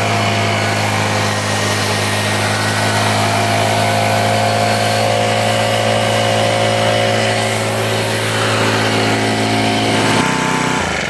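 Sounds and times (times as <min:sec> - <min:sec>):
leaf blower running: 0:00.0 - 0:11.0.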